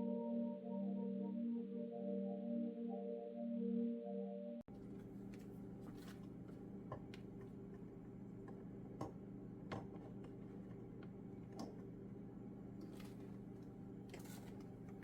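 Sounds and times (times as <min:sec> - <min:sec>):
appliance hum: 0:04.7 - 0:15.0.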